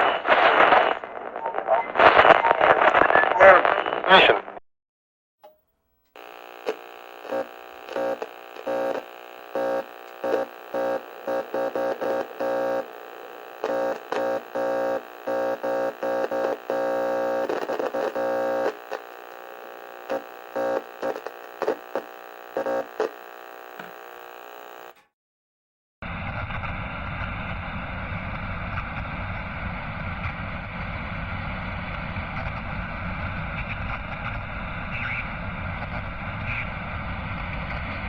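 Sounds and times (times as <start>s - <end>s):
electrical static buzz: 6.2s - 25.0s.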